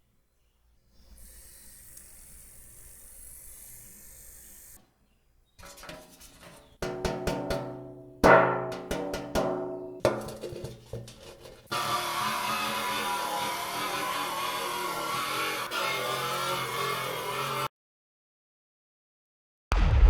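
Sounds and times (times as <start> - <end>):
motor scraping on metal can: 8.7 - 17.7.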